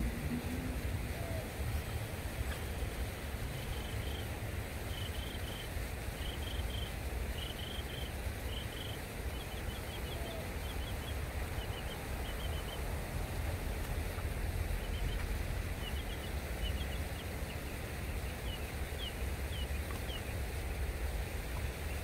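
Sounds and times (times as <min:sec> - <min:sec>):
steady low rumble: 0:00.0 - 0:22.0
bird chirping: 0:03.4 - 0:12.9, 0:14.0 - 0:20.4.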